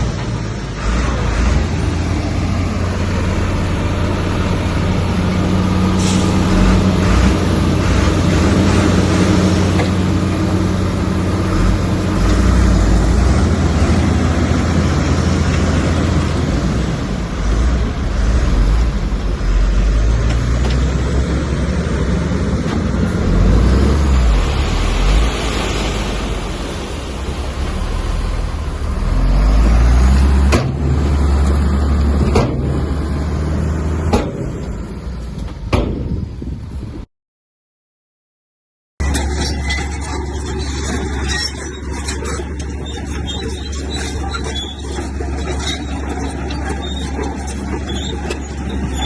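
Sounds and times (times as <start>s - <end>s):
heavy diesel machinery rumbling: 0.0s - 37.1s, 39.0s - 49.0s
sharp knocks: 35.7s - 36.2s.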